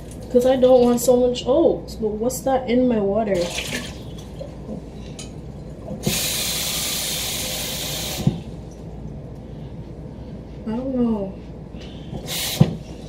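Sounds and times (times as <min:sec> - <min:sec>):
water running into a sink: 0:03.4 - 0:04.5.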